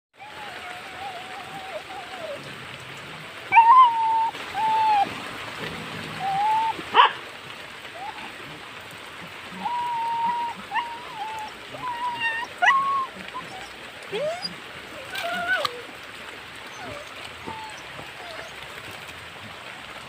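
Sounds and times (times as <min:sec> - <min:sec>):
dogs whining and yelping: 0:00.2 - 0:02.6, 0:03.4 - 0:05.2, 0:06.1 - 0:07.2, 0:07.9 - 0:08.6, 0:09.5 - 0:15.9, 0:16.6 - 0:19.0
dog barking: 0:06.9 - 0:07.2.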